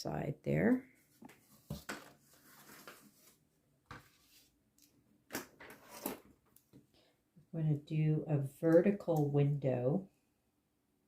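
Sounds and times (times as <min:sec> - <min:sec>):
soft rustles of foam board: 0:00.8 - 0:04.6.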